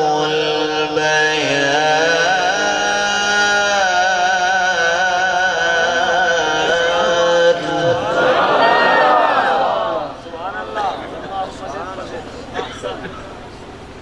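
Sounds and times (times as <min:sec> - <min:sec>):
man reciting melodically: 0:00.0 - 0:14.0.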